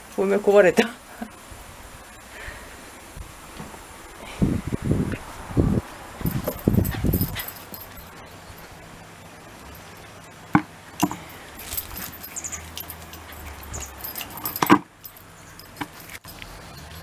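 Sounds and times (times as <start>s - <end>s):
dog sounds: 6.3s - 8.2s, 11.2s - 17.0s
small clicks and rustles: 11.0s - 17.0s.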